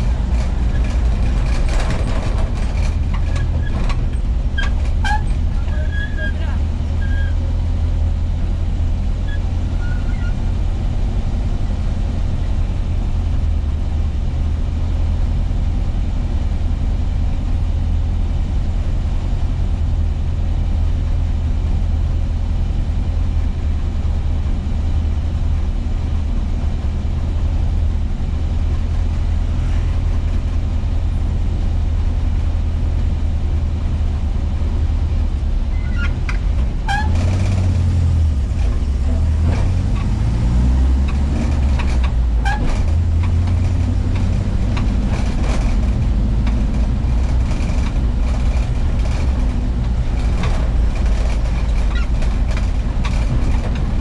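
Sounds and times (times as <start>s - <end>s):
van engine rumbling: 0.0s - 54.0s.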